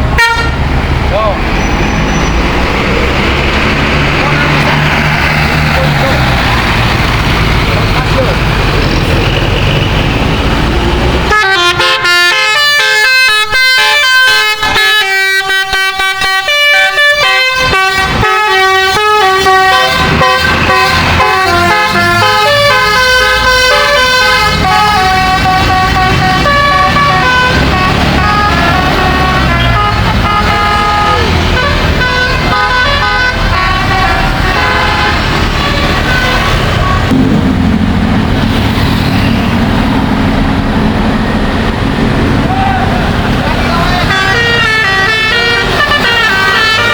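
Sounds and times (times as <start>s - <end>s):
bus engine rumble: 0.0s - 46.9s
musical air horn playing tune: 0.2s - 0.6s, 11.3s - 37.1s, 44.0s - 46.9s.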